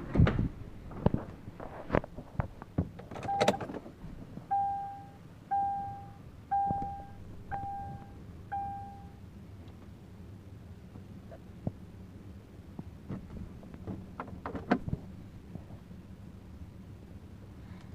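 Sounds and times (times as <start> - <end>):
vehicle warning chime beeps: 3.2 - 3.6, 4.5 - 9.2.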